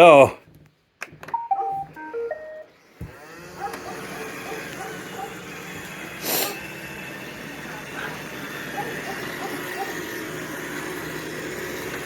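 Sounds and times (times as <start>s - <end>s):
electronic beeping start-up tune: 1.4s - 2.7s
vacuum motor and brushes running: 3.0s - 12.0s.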